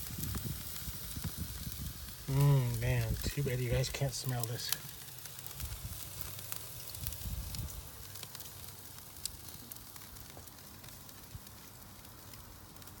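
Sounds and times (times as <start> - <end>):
wind rumble on microphone: 0.0 - 2.3, 7.0 - 7.9
meat sizzling over fire: 0.0 - 13.0.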